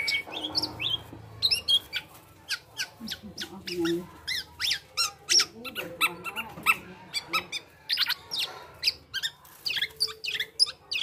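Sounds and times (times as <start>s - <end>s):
bird singing whistled notes: 0.0s - 2.0s.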